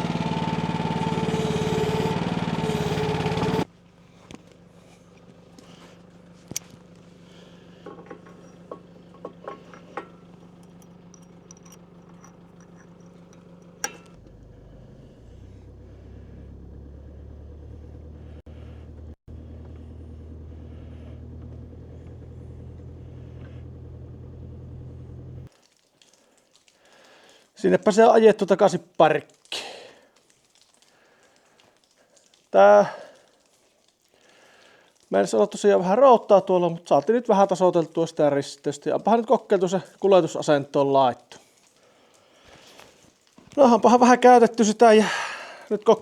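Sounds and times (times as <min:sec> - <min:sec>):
engine running: 0:00.0 - 0:25.5
light clinks and knocks: 0:07.8 - 0:14.4.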